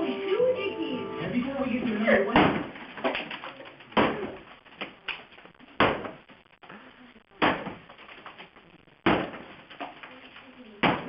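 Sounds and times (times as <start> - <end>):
sledgehammer smashing wood: 9.0 - 9.8, 10.8 - 11.0.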